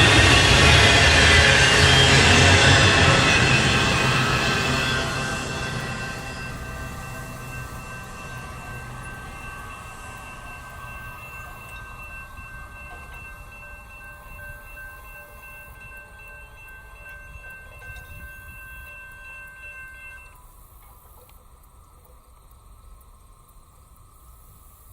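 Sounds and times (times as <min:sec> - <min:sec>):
crossing bell ringing: 0:00.0 - 0:21.6
freight train rumbling past: 0:00.0 - 0:21.9.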